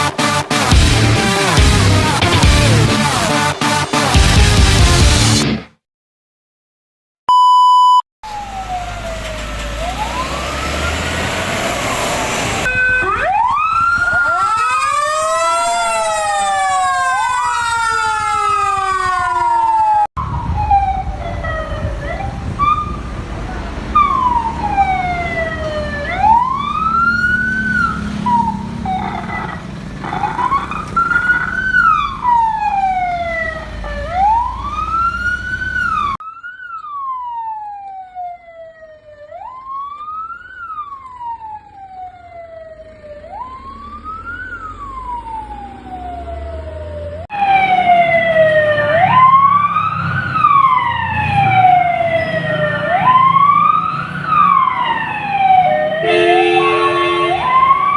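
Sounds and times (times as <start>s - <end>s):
fire engine sirens wailing: 8.2s - 57.9s
low engine rumble: 8.3s - 20.1s.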